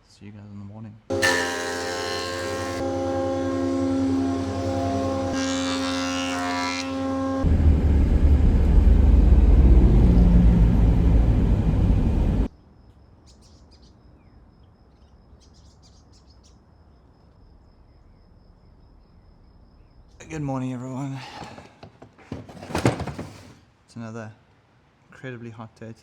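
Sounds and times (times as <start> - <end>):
machine rumbling: 2.1 - 12.5
faint bird chirps: 12.7 - 20.3.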